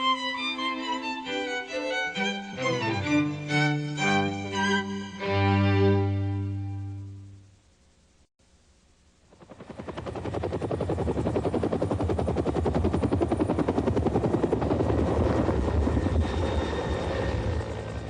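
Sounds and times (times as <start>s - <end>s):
helicopter rotor chop: 9.3s - 18.0s.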